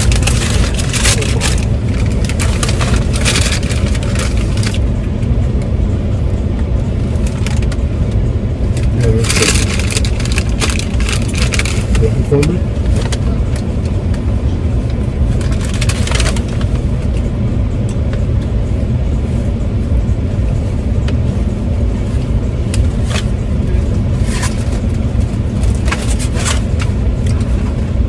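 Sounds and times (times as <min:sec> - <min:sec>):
car engine rumble in cabin: 0:00.0 - 0:28.0.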